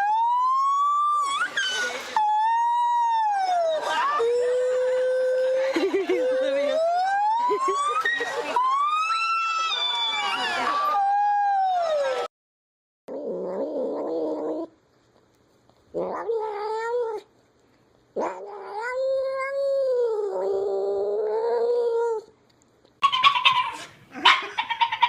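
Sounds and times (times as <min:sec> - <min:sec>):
cat yowling: 0:18.2 - 0:20.5.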